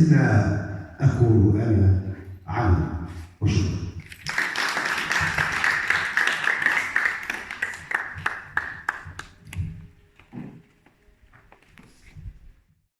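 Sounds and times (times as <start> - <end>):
audience applauding: 4.1 - 9.9.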